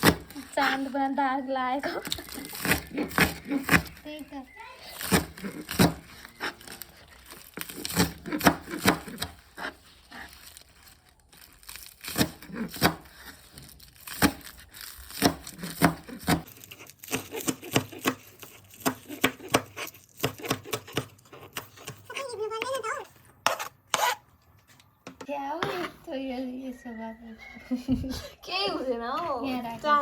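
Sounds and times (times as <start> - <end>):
crinkling and tearing: 1.8 - 20.5.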